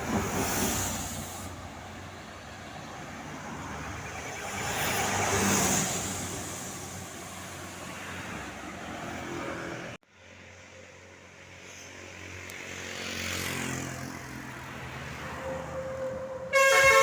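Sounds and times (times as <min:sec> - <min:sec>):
vehicle passing by: 0:11.5 - 0:16.1.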